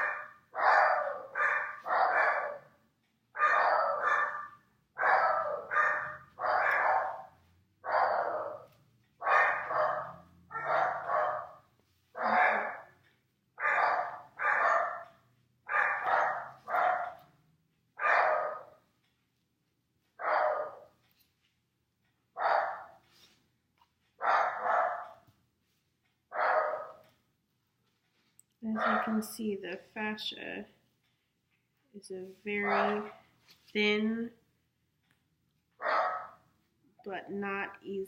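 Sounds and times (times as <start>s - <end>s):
dog barking: 0.0s - 2.7s, 3.4s - 13.0s, 13.6s - 17.3s, 18.0s - 18.8s, 20.2s - 20.9s, 22.4s - 23.0s, 24.2s - 25.2s, 26.3s - 27.0s, 28.8s - 29.2s, 32.6s - 33.2s, 35.8s - 36.4s.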